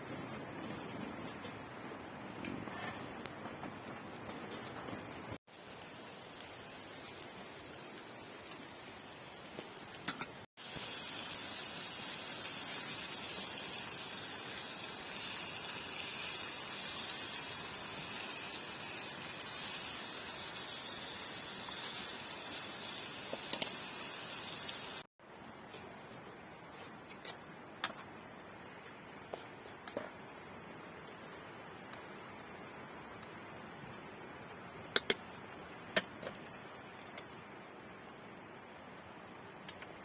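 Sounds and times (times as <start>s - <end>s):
rain hissing: 5.3s - 25.1s.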